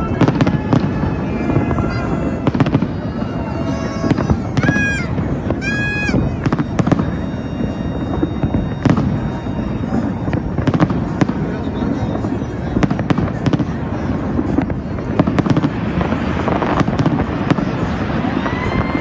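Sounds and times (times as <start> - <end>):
whistling fireworks: 0.0 - 13.6
continuous fireworks rumble: 12.2 - 18.6
fireworks bangs and crackles: 12.8 - 18.6.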